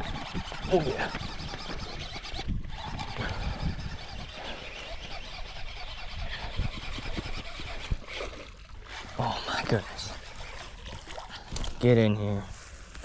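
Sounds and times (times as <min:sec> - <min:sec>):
low wind rumble: 0:00.0 - 0:08.1.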